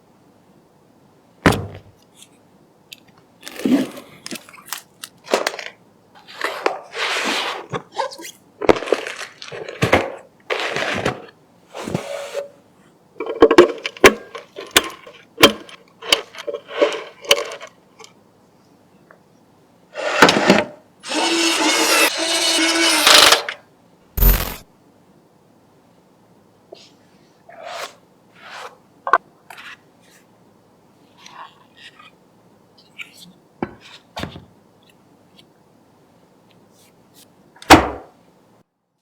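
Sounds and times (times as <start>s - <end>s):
scraping and rustling: 8.6s - 12.5s.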